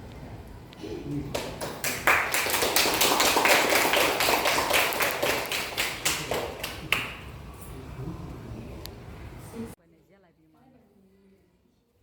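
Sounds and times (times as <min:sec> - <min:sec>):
small group clapping: 0:01.1 - 0:07.4.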